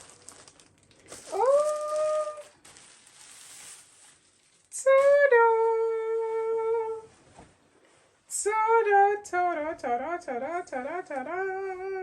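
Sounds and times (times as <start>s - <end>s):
woman humming: 1.3s - 2.5s, 4.8s - 7.1s, 8.4s - 12.0s.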